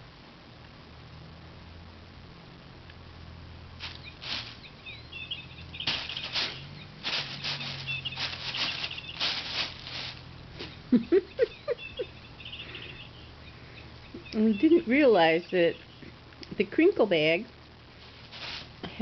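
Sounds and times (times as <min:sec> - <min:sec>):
crinkle toy rustling: 0:03.8 - 0:16.1, 0:17.9 - 0:19.0
electronic bird chirper trills: 0:03.9 - 0:16.1.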